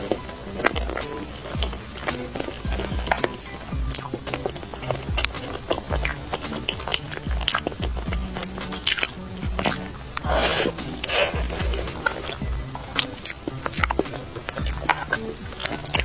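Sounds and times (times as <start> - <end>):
background music: 0.0 - 16.0
chewing soft bread: 0.0 - 16.0.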